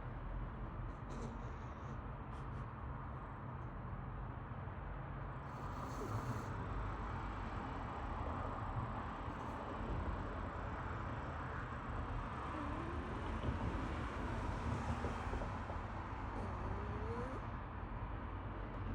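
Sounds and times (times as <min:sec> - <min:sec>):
cat snoring: 0:01.1 - 0:01.9, 0:05.5 - 0:07.0, 0:12.5 - 0:13.1, 0:16.2 - 0:17.6.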